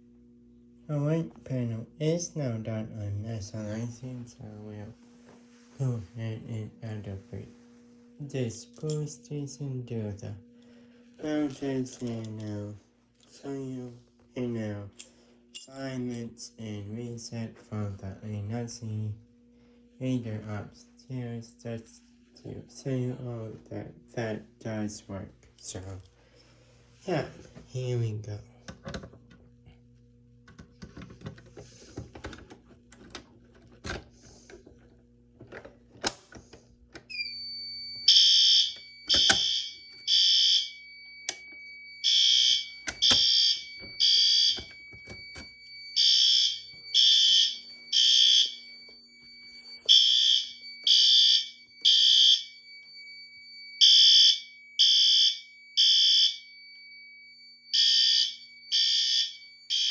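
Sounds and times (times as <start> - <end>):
steady high alarm tone: 0.9 - 28.8, 36.5 - 59.9
fire alarm horn blasts: 37.1 - 59.9.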